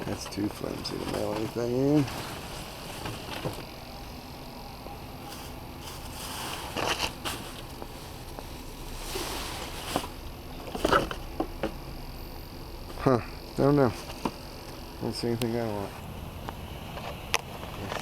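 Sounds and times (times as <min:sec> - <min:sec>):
faint background hum: 0:00.0 - 0:18.0
cardboard rustling and scraping: 0:00.1 - 0:03.7, 0:05.2 - 0:11.7.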